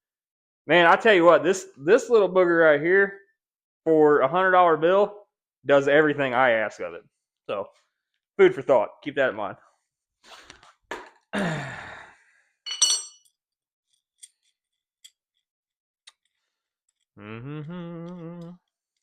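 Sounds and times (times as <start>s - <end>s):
man sighing: 11.3s - 12.2s, 17.2s - 18.6s
metallic clink of tools: 12.7s - 13.3s.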